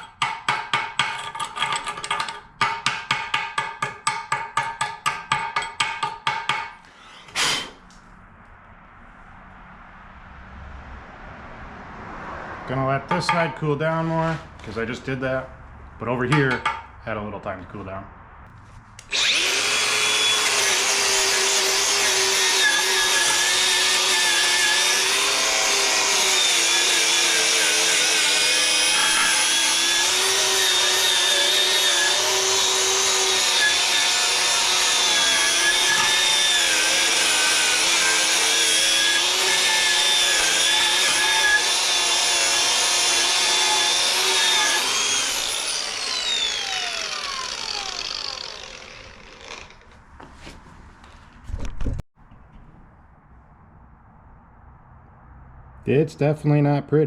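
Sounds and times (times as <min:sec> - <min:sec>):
angle grinder grinding metal: 0:06.8 - 0:07.8, 0:19.0 - 0:50.0.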